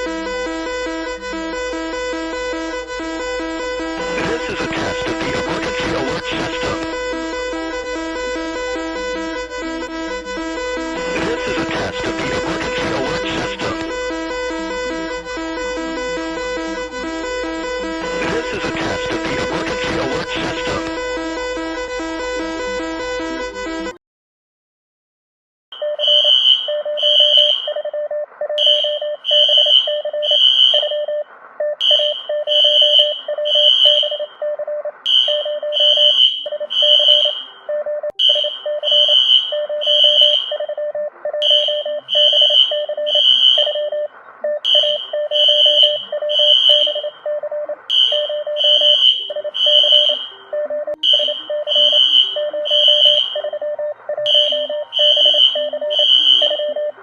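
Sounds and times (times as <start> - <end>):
low rapidly pulsing tone: 0.0 - 23.9
high shrill alarm beeps: 25.8 - 27.9, 28.6 - 31.1, 31.8 - 34.3, 35.1 - 37.4, 38.2 - 40.8, 41.4 - 44.0, 44.7 - 47.2, 47.9 - 50.3, 51.0 - 56.9.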